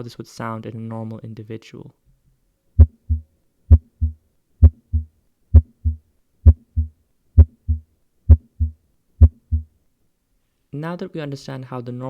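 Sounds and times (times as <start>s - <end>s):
heartbeat lub-dub: 2.8s - 9.7s.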